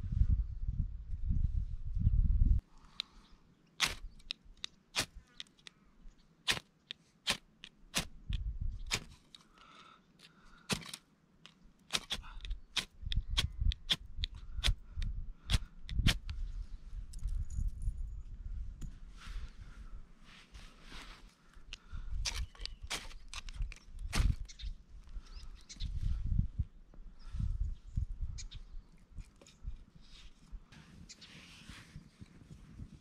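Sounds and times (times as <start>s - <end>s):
firewood cracking: 3.8s - 5.6s, 10.6s - 14.8s.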